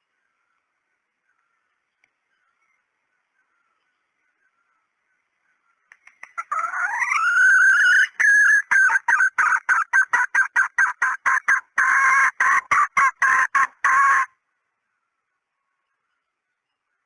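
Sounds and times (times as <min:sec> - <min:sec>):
hen call short clucks: 0:05.9 - 0:14.3.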